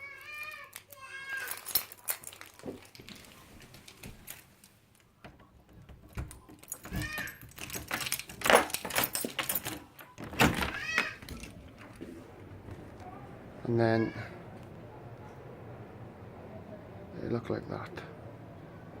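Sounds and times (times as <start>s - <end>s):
cat meowing: 13.1s - 14.5s.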